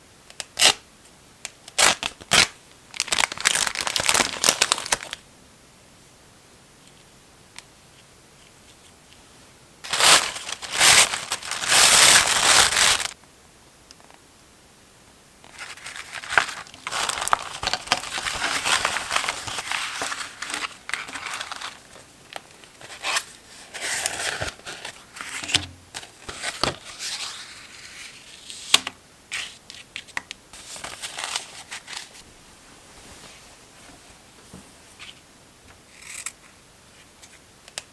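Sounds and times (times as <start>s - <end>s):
paper crinkling and tearing: 1.8s - 5.2s, 9.8s - 13.2s, 15.5s - 28.0s, 30.6s - 32.2s
paper rustling: 9.8s - 13.2s, 15.4s - 28.6s, 29.4s - 35.2s.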